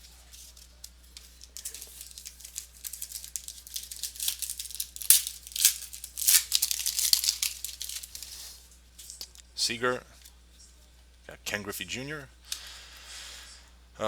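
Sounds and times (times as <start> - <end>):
card wrapper crinkling: 0.0 - 9.4.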